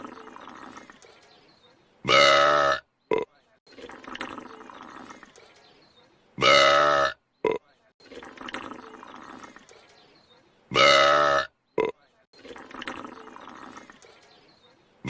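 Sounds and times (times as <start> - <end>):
cartoon woman belching: 2.1 - 3.3, 6.4 - 7.6, 10.7 - 12.0.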